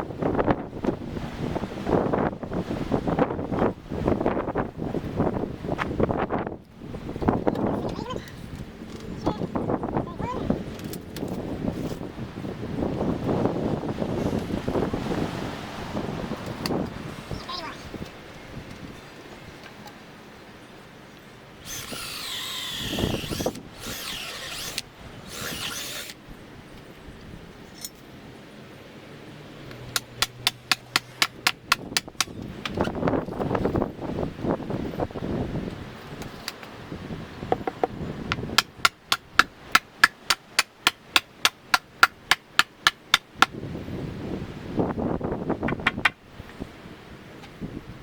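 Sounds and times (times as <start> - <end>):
power drill boring into wood: 21.6 - 26.2
hammer striking metal rod: 29.9 - 32.3.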